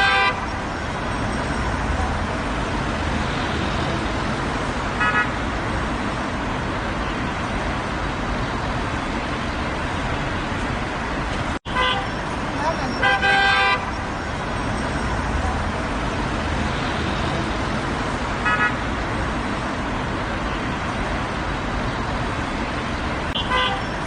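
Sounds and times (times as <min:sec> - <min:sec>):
car horn toot: 0:00.0 - 0:00.5, 0:05.0 - 0:05.4, 0:11.7 - 0:12.2, 0:12.9 - 0:13.9, 0:23.3 - 0:23.9
rumble of passing cars: 0:00.0 - 0:24.0.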